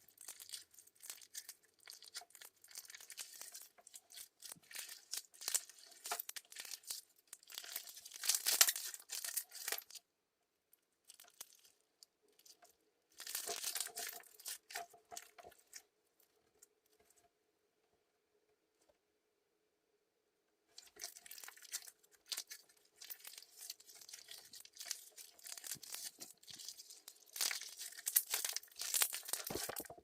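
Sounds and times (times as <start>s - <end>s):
slime crackling and popping: 0.0s - 10.0s, 12.4s - 15.8s, 20.8s - 30.0s.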